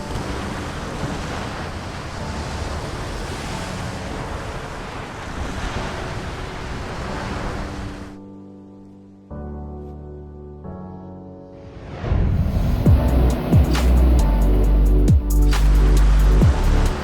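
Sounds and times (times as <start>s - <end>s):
steady rushing noise: 11.6s - 17.0s.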